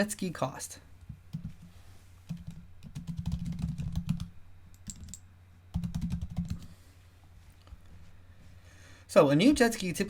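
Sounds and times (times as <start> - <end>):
keyboard typing: 2.3 - 6.7.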